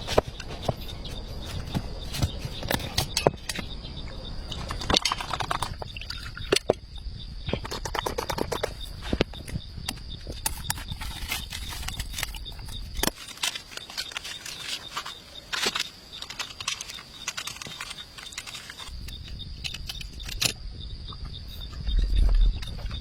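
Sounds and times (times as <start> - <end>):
high insect trill: 0.0 - 23.0
low rumble: 20.7 - 23.0.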